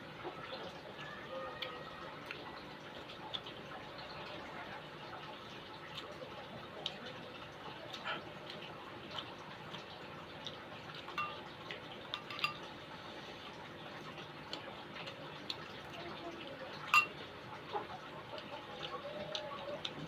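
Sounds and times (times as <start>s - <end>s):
spoon clinking against bowl: 11.2s - 11.4s, 12.1s - 12.7s, 16.9s - 17.2s.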